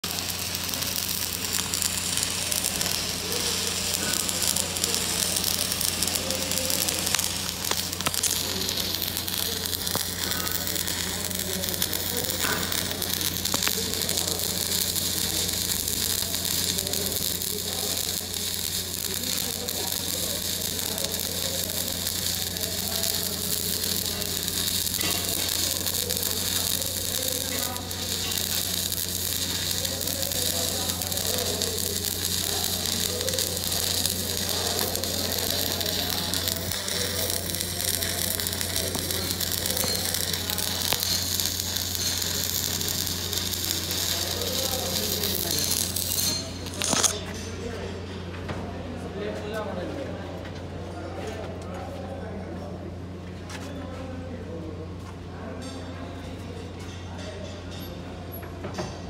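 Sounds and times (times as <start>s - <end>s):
welding arc crackling sizzle: 0.0s - 47.2s.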